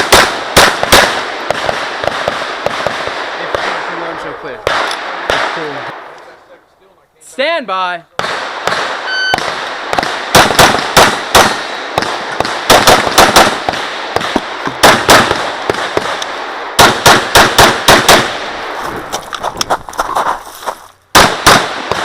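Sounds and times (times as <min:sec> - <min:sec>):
pistol shots: 0:00.0 - 0:06.2, 0:08.2 - 0:18.6, 0:21.1 - 0:22.0.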